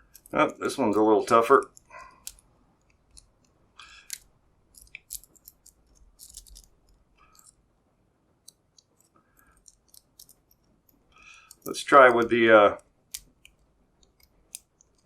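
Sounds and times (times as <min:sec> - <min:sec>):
lock pick clicking and scraping: 0:00.0 - 0:00.4, 0:01.6 - 0:07.6, 0:08.4 - 0:11.8, 0:12.8 - 0:15.0.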